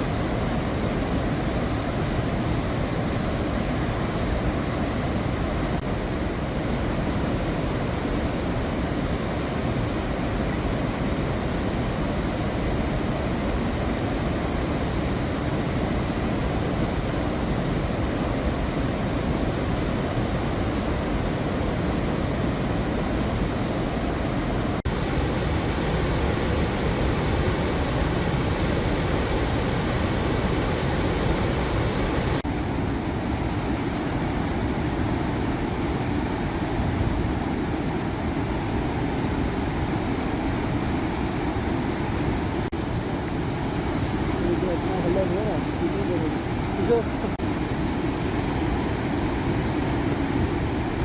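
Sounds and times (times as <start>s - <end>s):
floodwater rushing: 31.4s - 51.0s.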